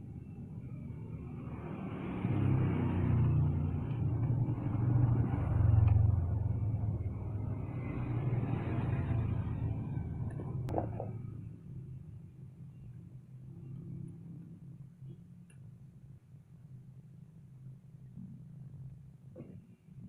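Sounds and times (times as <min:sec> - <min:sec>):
vehicle engine rumbling: 0:00.0 - 0:12.5.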